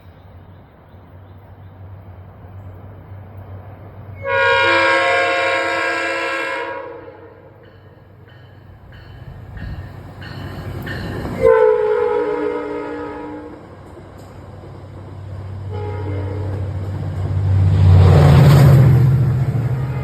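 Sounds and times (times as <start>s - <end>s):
locomotive rumble: 0.6s - 20.0s
locomotive horn: 4.2s - 7.5s, 11.4s - 13.6s, 15.6s - 16.8s, 19.6s - 20.0s
train wheel noise: 7.3s - 20.0s.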